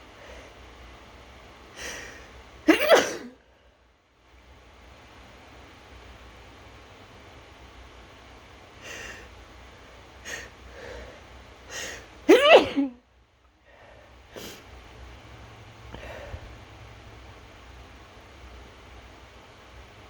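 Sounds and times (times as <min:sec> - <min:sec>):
person sneezing: 0:02.7 - 0:03.4, 0:11.8 - 0:13.0, 0:14.4 - 0:14.6.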